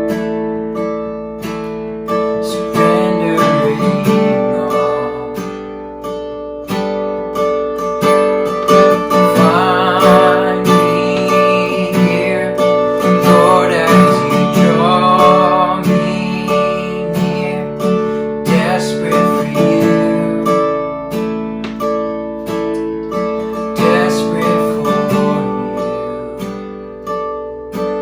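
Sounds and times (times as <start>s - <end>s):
strummed acoustic guitar: 0.0s - 28.0s
person singing: 2.5s - 5.6s, 9.1s - 20.8s, 23.7s - 26.6s.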